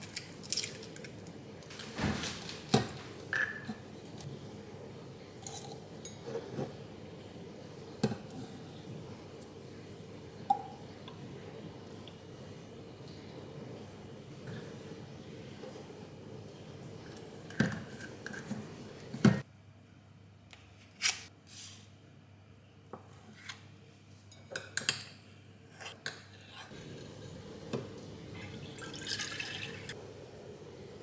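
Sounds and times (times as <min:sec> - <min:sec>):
utensils and dishes clinking: 0:05.4 - 0:06.8.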